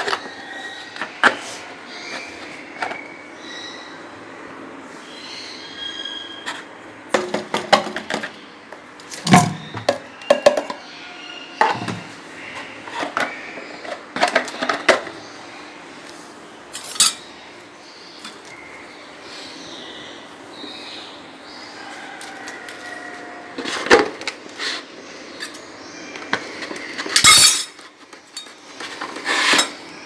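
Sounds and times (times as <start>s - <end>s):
bowl and utensil clinking: 9.1s - 10.8s.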